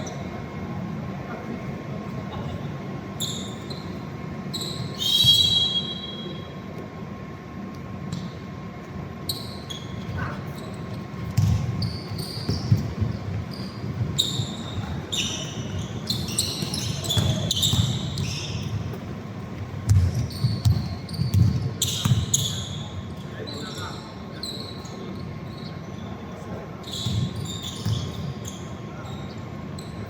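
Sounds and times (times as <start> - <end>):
basketball bouncing on court: 10.0 - 22.7, 27.0 - 28.4.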